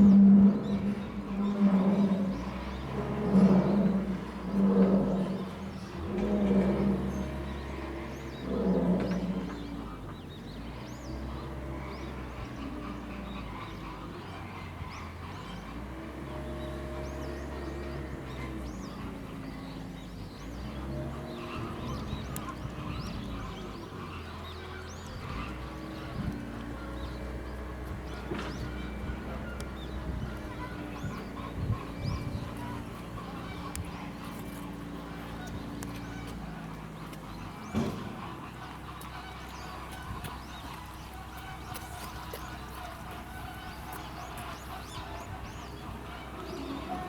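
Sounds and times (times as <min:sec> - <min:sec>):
lion grunting: 0:00.0 - 0:10.0
low engine-like drone: 0:00.0 - 0:47.0
small birds chirping: 0:00.0 - 0:47.0.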